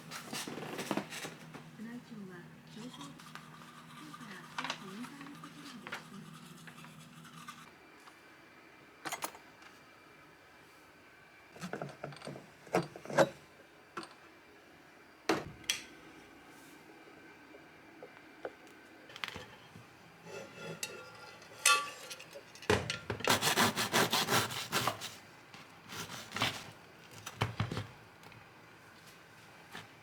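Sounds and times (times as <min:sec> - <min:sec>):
low steady hum: 0:00.0 - 0:23.3.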